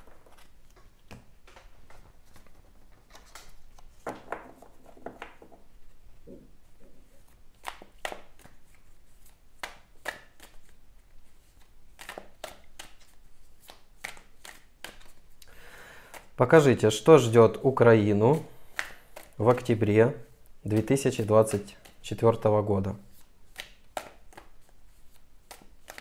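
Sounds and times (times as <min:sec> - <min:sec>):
cards being shuffled: 0:00.0 - 0:05.7, 0:07.2 - 0:15.4, 0:18.3 - 0:19.8, 0:20.7 - 0:26.0.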